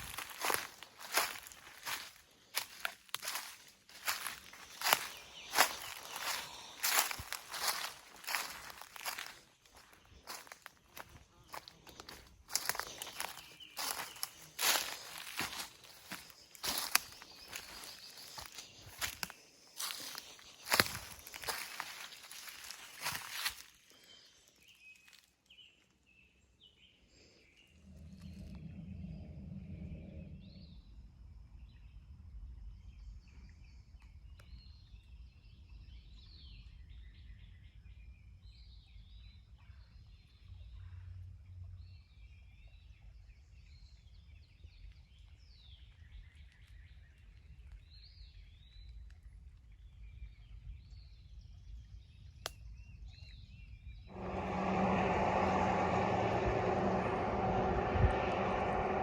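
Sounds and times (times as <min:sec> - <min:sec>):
songbirds chirping: 0:00.0 - 0:59.0
low rumble: 0:02.6 - 0:23.6, 0:27.6 - 0:32.9, 0:54.1 - 0:59.0
loud rushing noise with hum: 0:54.1 - 0:59.0.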